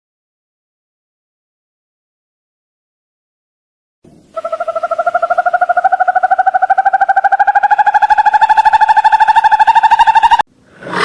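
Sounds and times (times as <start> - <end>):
animal trilling call: 4.3 - 10.4.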